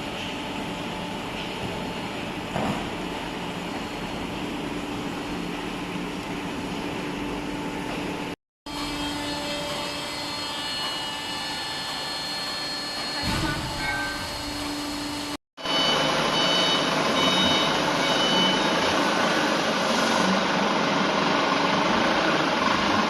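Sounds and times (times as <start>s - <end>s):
waste paper baler humming: 0.0s - 23.0s.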